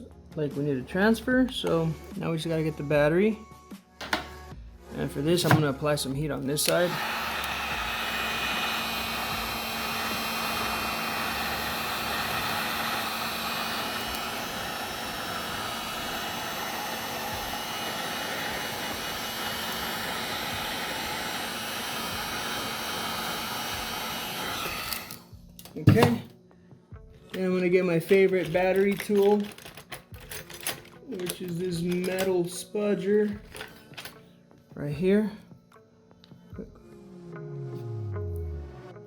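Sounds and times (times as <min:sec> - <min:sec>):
heat gun blowing hot air: 0:05.4 - 0:05.7, 0:06.5 - 0:26.2.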